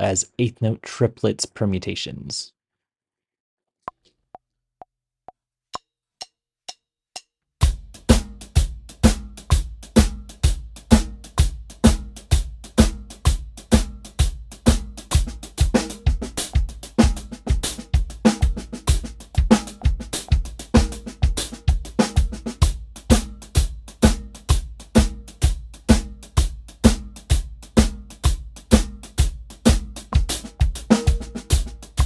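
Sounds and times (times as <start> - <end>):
drum kit playing: 7.6 - 32.0.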